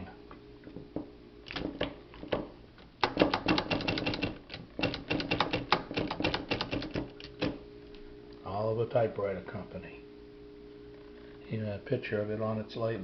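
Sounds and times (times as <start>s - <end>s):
typewriter clicking: 3.0s - 7.6s.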